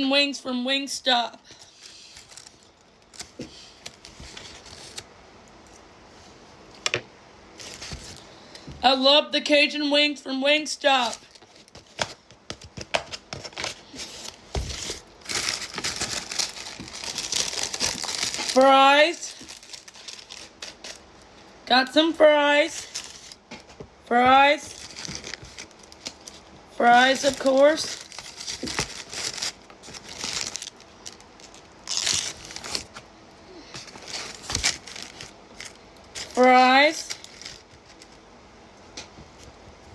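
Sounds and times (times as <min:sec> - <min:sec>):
paper packaging crinkling: 0:01.5 - 0:05.1, 0:07.6 - 0:08.3, 0:10.9 - 0:21.2, 0:22.7 - 0:23.7, 0:24.6 - 0:33.0, 0:33.6 - 0:38.2.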